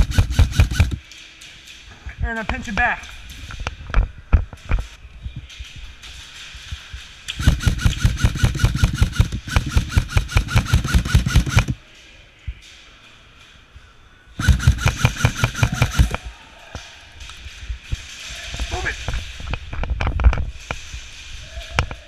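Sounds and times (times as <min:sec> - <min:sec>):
airsoft gun firing full-auto: 0:00.0 - 0:01.0, 0:07.3 - 0:11.8, 0:14.4 - 0:16.2.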